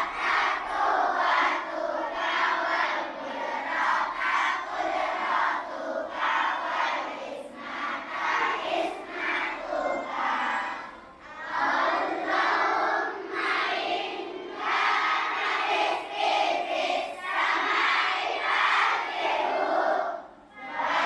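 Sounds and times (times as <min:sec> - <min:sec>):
children chanting in unison: 0:00.0 - 0:21.0.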